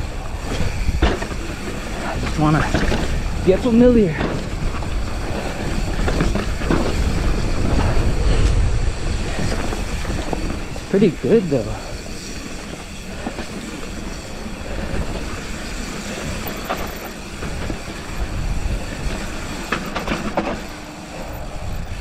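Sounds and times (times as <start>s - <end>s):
bike clacking over bumps: 0.0s - 11.3s, 11.9s - 20.9s
bike chain and frame rattling: 0.0s - 22.0s
tyre and wind rush: 0.0s - 22.0s.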